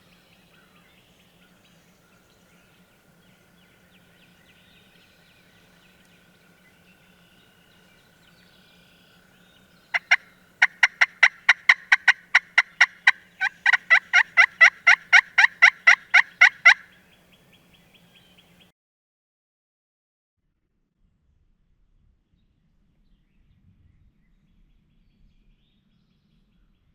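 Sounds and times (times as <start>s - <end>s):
turkey yelping: 9.9s - 16.9s.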